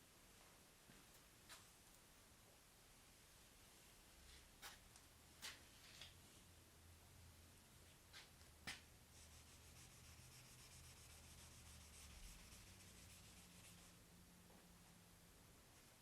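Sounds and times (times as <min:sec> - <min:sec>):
sanding block rubbing: 0:09.2 - 0:13.9.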